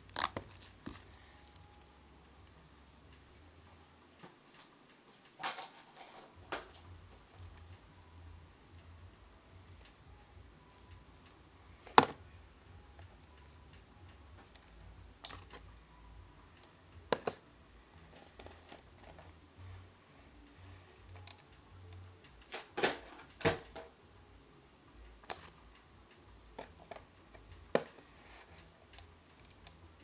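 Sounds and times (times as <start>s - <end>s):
small objects clicking and tapping: 10.8s - 19.4s, 20.4s - 24.0s, 25.0s - 30.0s.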